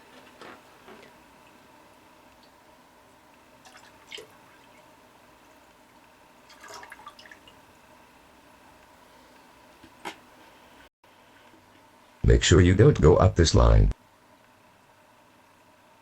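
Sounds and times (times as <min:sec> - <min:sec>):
water dripping into tank: 0:01.0 - 0:07.9.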